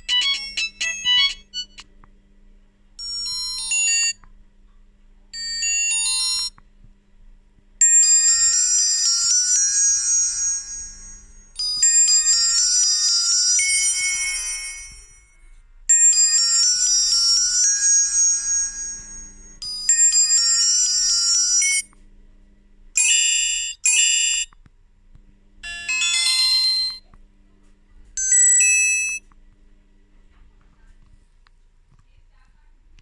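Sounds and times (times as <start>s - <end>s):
phone ringtone melody: 0.0s - 1.8s, 3.0s - 4.2s, 7.8s - 21.9s, 23.0s - 24.5s, 25.6s - 27.1s, 28.2s - 29.2s.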